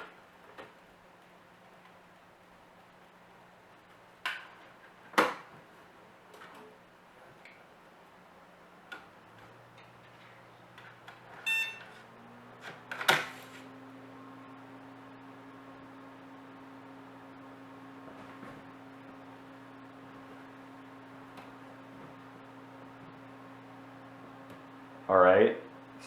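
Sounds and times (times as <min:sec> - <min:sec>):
computer fan hum: 0:00.0 - 0:26.0
short computer beep: 0:11.4 - 0:11.9.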